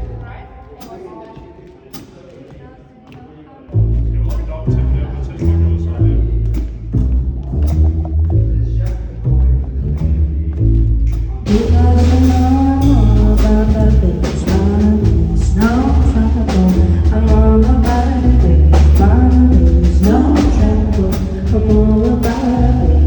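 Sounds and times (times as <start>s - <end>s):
walking bass line: 3.7s - 23.0s
drum strikes: 10.0s - 23.0s
jazz band playing live: 11.5s - 23.0s
person singing: 11.5s - 23.0s.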